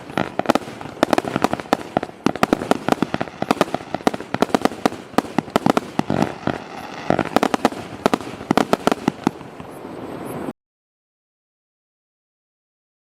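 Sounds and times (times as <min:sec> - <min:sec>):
firework shots banging: 0:00.0 - 0:09.7.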